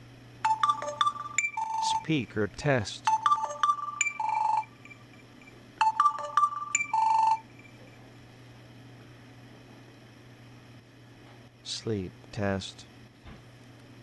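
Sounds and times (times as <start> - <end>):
electronic melody from phone speaker: 0.4 - 2.1, 3.1 - 7.9.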